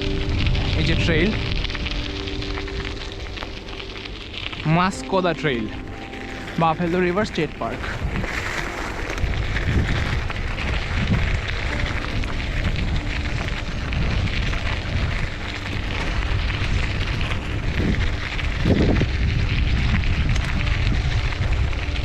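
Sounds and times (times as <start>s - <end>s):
wind buffeting microphone: 0.0s - 22.0s.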